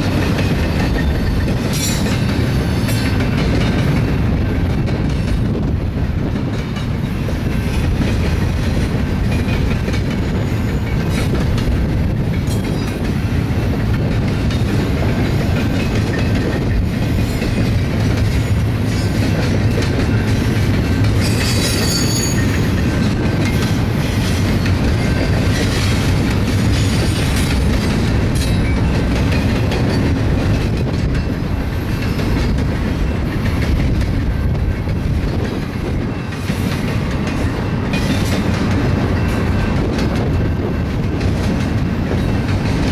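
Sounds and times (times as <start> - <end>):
freight train rumbling: 0.0 - 42.9
wheels clacking over rail joints: 0.0 - 42.9
metallic wheel squeal: 21.2 - 22.7.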